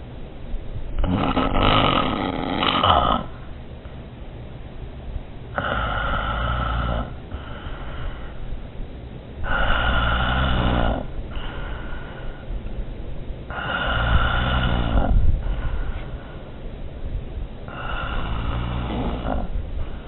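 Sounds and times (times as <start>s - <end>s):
heavy snoring: 1.0s - 3.4s, 5.6s - 7.9s, 9.4s - 11.6s, 13.5s - 15.2s, 17.7s - 19.6s
soft breath out: 5.6s - 8.6s, 11.3s - 12.6s, 13.5s - 16.6s.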